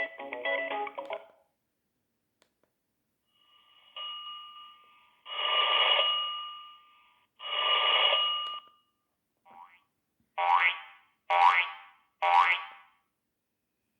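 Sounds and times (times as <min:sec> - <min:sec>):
phone ringtone two-pitched ring: 0:04.0 - 0:08.9.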